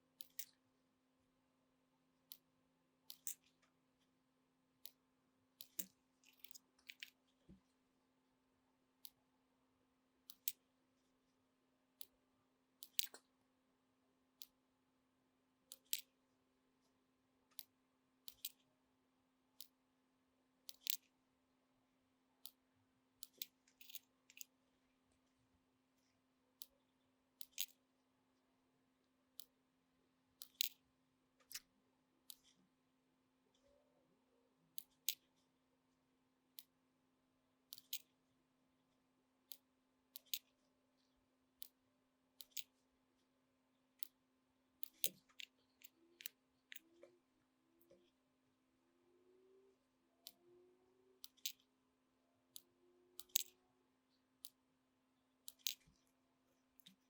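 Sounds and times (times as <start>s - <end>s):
faint steady hum: 0.0s - 57.0s
small hand tools clicking and snipping: 52.6s - 53.6s, 55.5s - 56.0s.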